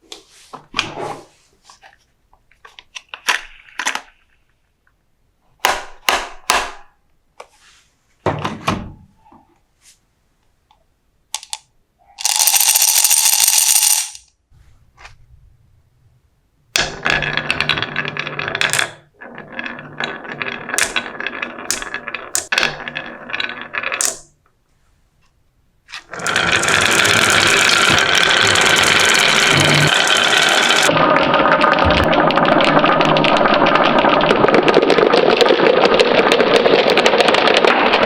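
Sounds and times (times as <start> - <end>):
marbles rolling down a marble run: 12.2 - 14.3, 16.8 - 24.3, 26.1 - 38.0.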